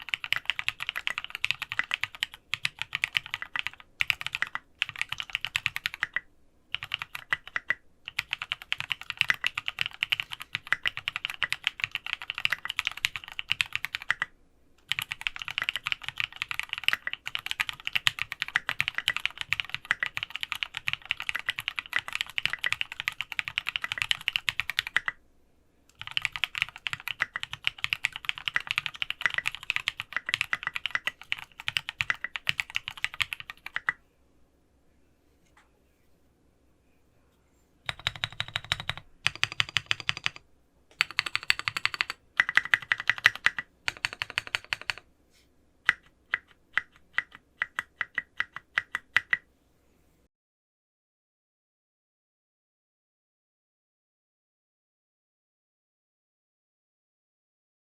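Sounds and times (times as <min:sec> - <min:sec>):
fast typing on mechanical keyboard: 0:00.0 - 0:25.2, 0:25.9 - 0:34.0, 0:37.9 - 0:45.0, 0:45.8 - 0:49.4.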